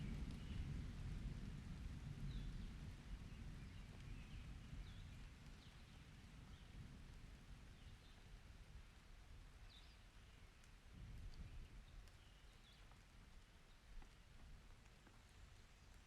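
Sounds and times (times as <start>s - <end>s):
light rain hiss: 0.0s - 16.0s.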